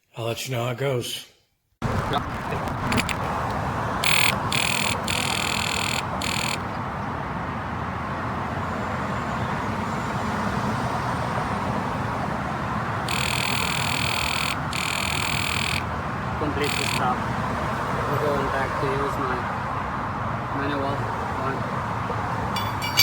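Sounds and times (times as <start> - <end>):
impact wrench hammering: 22.6 - 23.0.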